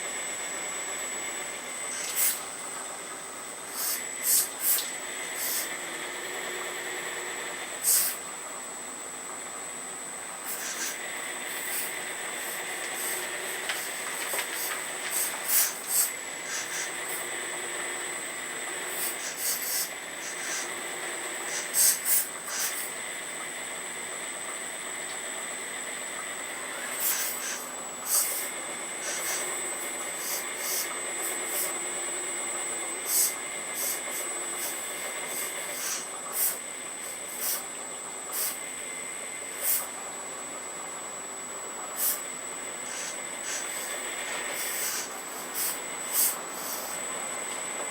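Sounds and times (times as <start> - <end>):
hydraulic pump whine: 0.0 - 47.9
short hydraulic hissing bursts: 1.9 - 2.5, 3.7 - 5.8, 7.8 - 8.2, 10.4 - 17.3, 18.8 - 20.8, 21.4 - 23.0, 26.7 - 31.8, 33.0 - 37.7, 38.3 - 38.8, 39.5 - 40.0, 42.0 - 47.1.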